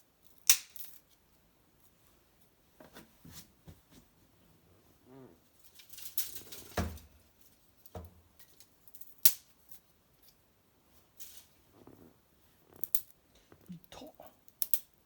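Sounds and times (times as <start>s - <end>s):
fire pops and snaps: 0.4s - 0.9s, 11.7s - 13.7s, 14.5s - 15.0s
twig fire crackling: 11.0s - 15.0s.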